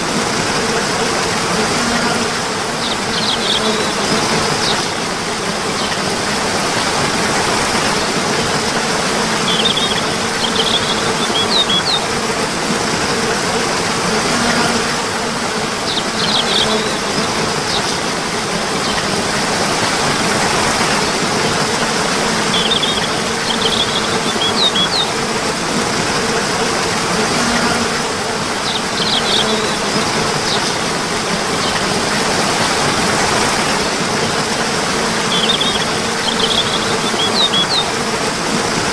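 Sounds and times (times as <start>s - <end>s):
water rushing: 0.0s - 38.9s
high bird chirps: 2.8s - 4.9s, 9.4s - 12.0s, 22.5s - 25.1s, 28.6s - 29.7s, 35.3s - 37.9s.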